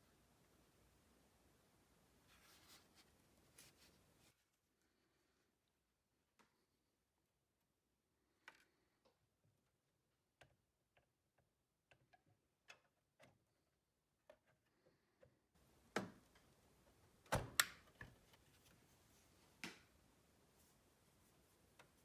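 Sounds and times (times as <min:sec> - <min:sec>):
faint steady hiss: 0:00.0 - 0:10.0, 0:14.9 - 0:22.0
faint clicks and taps: 0:21.6 - 0:22.0.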